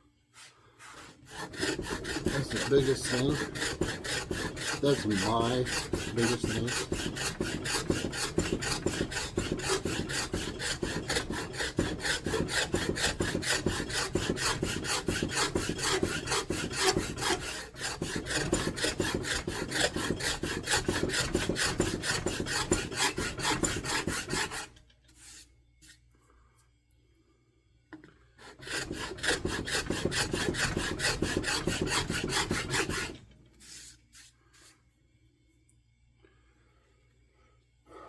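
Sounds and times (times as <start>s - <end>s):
rasp strokes on wood: 0.8s - 25.4s, 28.4s - 33.2s.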